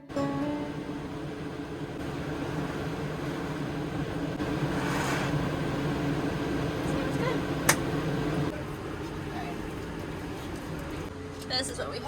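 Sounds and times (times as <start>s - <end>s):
mechanical rumble with hum: 0.0s - 12.0s
hiss: 4.4s - 5.6s.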